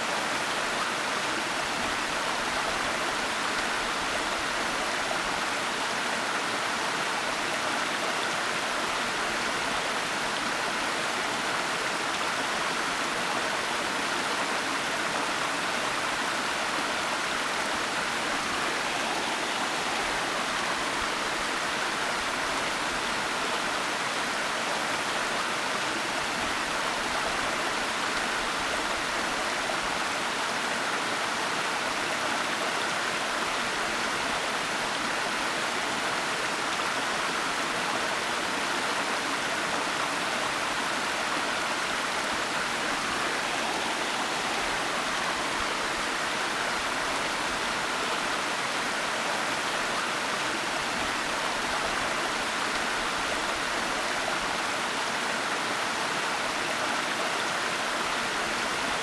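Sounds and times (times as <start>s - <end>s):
waterfall rushing: 17.0s - 23.0s, 39.8s - 55.0s.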